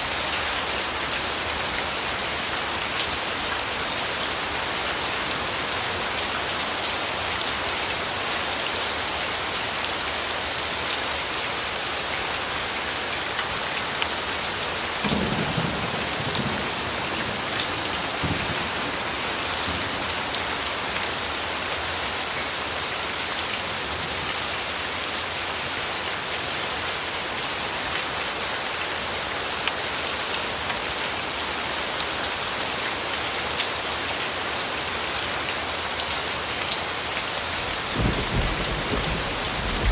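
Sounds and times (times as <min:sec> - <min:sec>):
dense rain falling: 0:00.0 - 0:39.9
low rumble of thunder: 0:15.0 - 0:19.9, 0:38.0 - 0:39.9.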